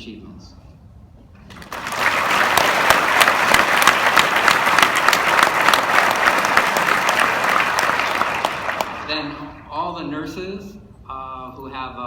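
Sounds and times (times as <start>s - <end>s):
audience applauding: 1.4s - 9.6s.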